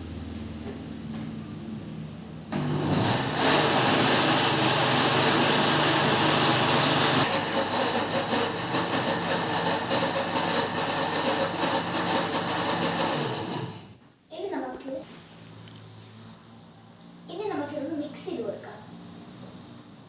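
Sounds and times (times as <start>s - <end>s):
electric mixer motor running: 2.5s - 13.9s.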